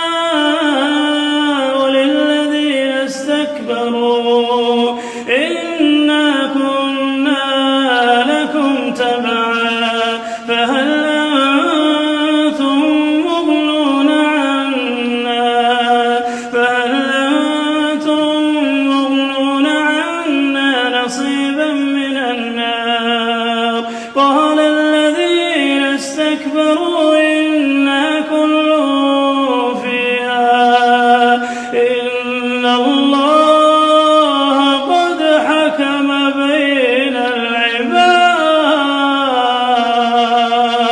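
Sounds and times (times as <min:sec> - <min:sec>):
person reciting in melodic chant: 0:00.0 - 0:40.9.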